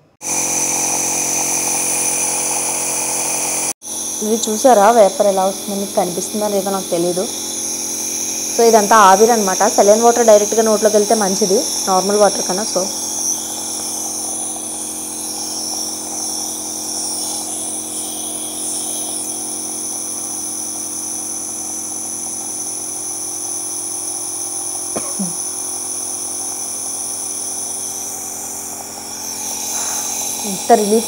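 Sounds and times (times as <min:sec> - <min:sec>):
nebuliser motor hum: 0:00.0 - 0:31.0
nebuliser hiss: 0:03.8 - 0:20.2, 0:29.1 - 0:31.0.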